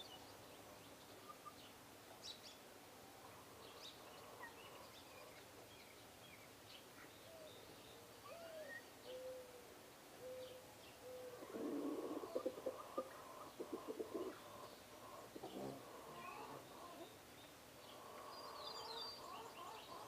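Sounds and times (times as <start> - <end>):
faint high bird chirps: 7.0 - 9.5.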